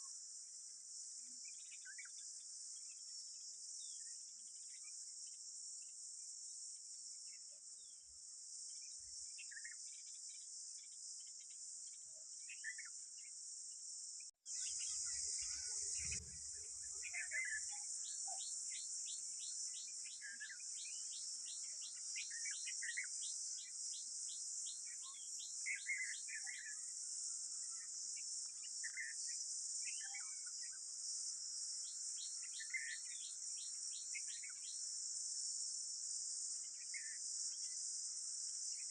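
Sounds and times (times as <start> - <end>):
high-pitched insect drone: 8.6 - 38.9
bird chirps: 14.5 - 23.7.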